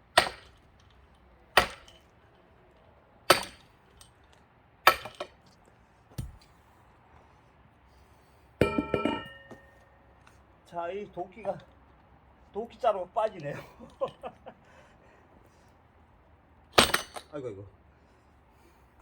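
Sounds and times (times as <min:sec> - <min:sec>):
axe splitting log: 0:00.1 - 0:00.7, 0:01.5 - 0:02.0, 0:03.3 - 0:04.0, 0:04.9 - 0:05.4, 0:06.1 - 0:06.5, 0:16.8 - 0:17.3
metal clang with rattle: 0:08.6 - 0:09.7, 0:16.8 - 0:17.3.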